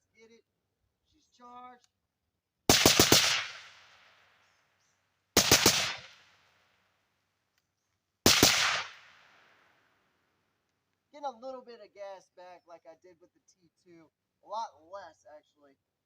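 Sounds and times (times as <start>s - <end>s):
suppressed rifle shots: 2.7s - 4.6s, 5.4s - 6.4s, 8.2s - 9.6s.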